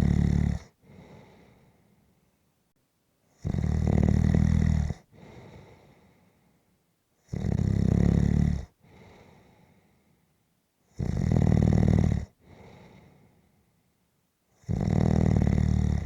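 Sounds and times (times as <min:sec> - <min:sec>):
person snoring: 0:00.0 - 0:00.7, 0:14.7 - 0:16.0
soft breath out: 0:00.8 - 0:02.3, 0:05.1 - 0:06.7, 0:08.8 - 0:10.3, 0:12.4 - 0:13.8.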